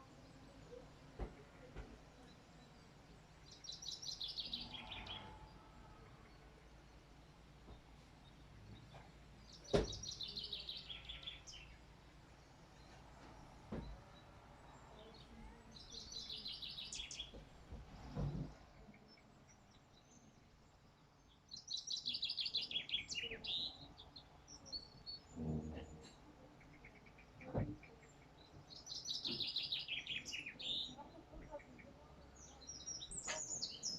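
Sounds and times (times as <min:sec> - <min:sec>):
songbird singing: 0:00.0 - 0:33.9.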